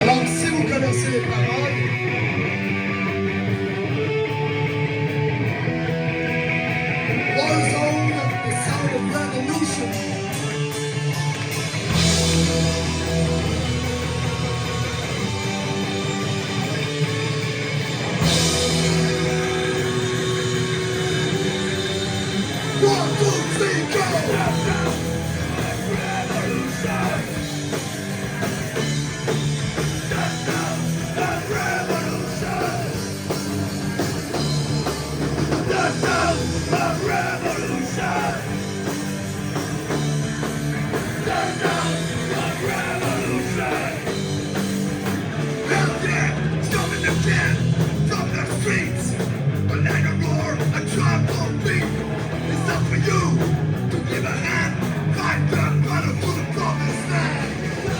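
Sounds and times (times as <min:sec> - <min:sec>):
punk band playing: 0:00.0 - 0:57.9
shouted vocals: 0:18.8 - 0:27.9, 0:30.0 - 0:33.6, 0:35.5 - 0:39.0, 0:40.9 - 0:44.6, 0:45.5 - 0:57.9.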